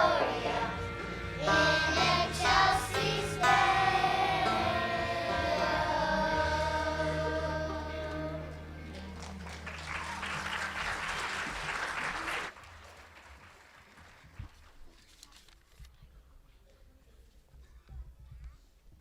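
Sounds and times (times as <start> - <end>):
children's choir singing: 0.0 - 8.8
audience applause: 8.9 - 14.8.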